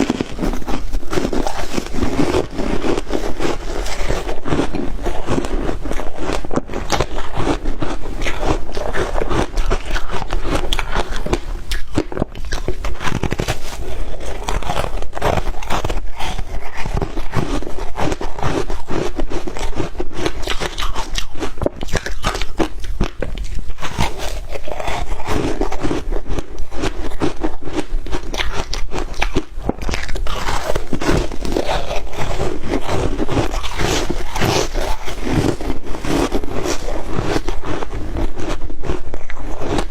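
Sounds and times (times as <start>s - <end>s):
ice crunching being chewed: 0.0s - 39.9s.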